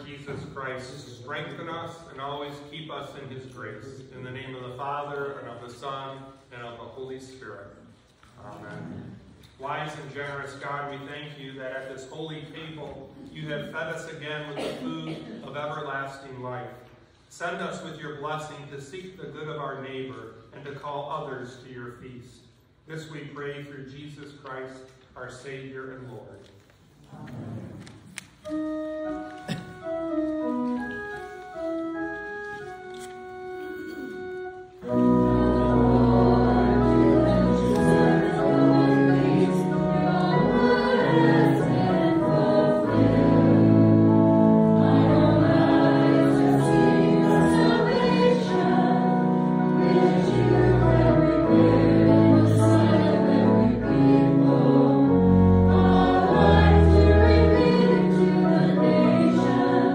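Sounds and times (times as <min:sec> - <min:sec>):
church organ playing a hymn: 0:00.0 - 0:07.7, 0:28.4 - 0:59.9.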